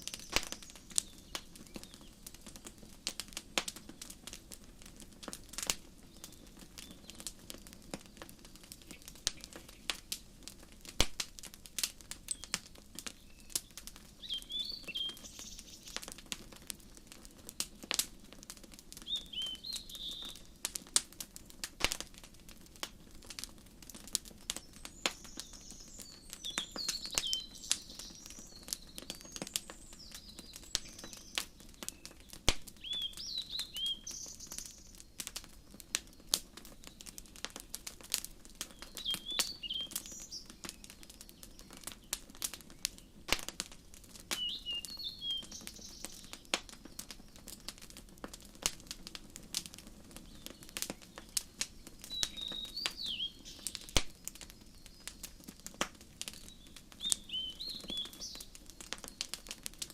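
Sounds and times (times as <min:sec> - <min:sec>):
birds chirping: 0:00.0 - 0:02.3, 0:05.9 - 0:10.2, 0:12.3 - 0:16.2, 0:18.9 - 0:20.6, 0:24.5 - 0:43.2, 0:44.3 - 0:47.8, 0:50.2 - 0:55.4, 0:56.3 - 0:59.5
wood fire crackling and popping: 0:00.0 - 0:59.9.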